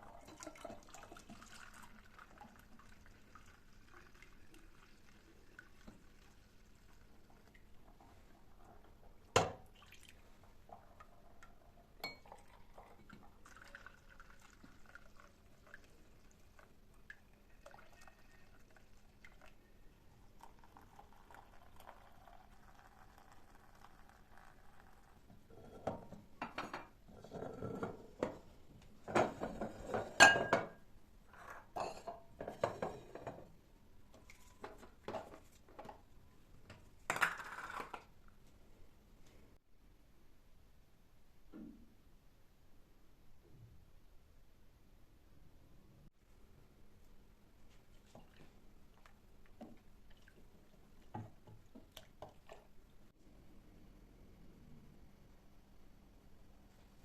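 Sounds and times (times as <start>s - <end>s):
dishes clinking and clattering: 25.5s - 30.8s, 31.4s - 33.5s.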